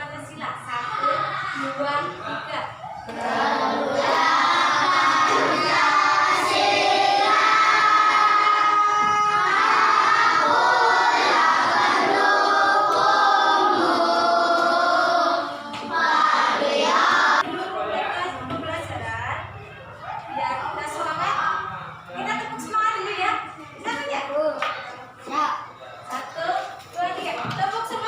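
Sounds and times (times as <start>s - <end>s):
children singing together: 3.0s - 17.5s.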